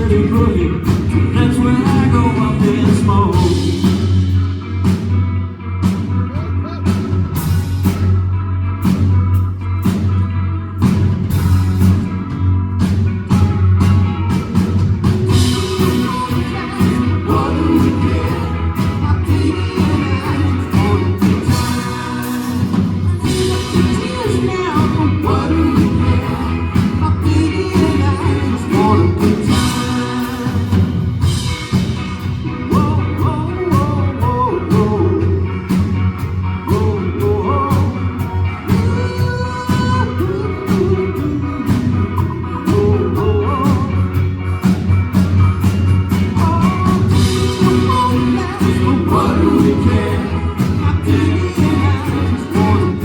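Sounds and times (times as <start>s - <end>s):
wordless vocals: 0.0s - 5.0s, 15.2s - 44.7s, 46.1s - 53.0s
pop rock band playing: 0.0s - 53.0s.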